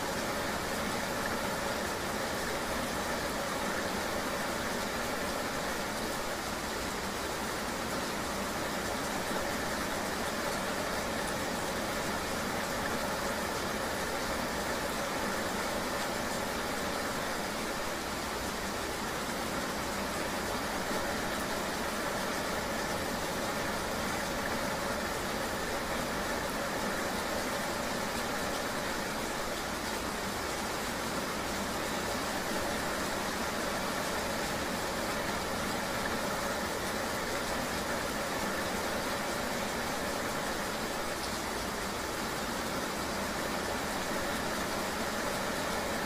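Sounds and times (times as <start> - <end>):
steady rain: 0.0 - 46.0.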